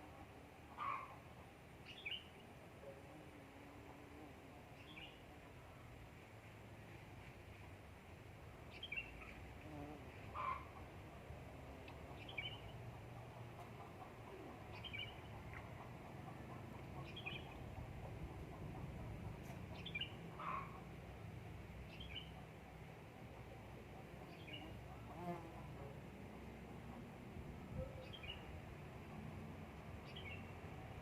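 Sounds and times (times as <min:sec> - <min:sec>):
bird chirping: 0:19.7 - 0:20.6.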